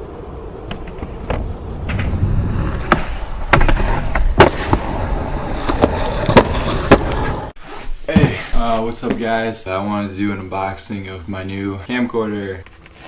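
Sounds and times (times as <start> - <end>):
skateboard wheels rolling: 0.0 - 9.5.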